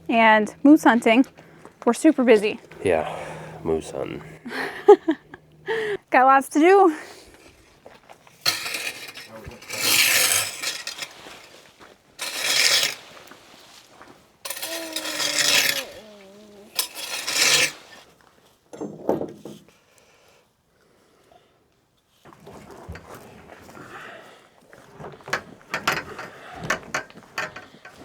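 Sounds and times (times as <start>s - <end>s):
long rasping scraping strokes: 0.0s - 6.0s, 8.3s - 18.1s.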